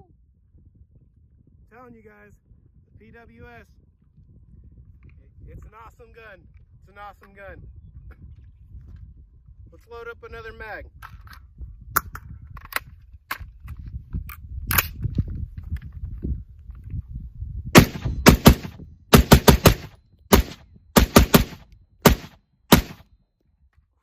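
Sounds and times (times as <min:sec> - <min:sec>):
pistol gunshots: 0:17.8 - 0:23.0.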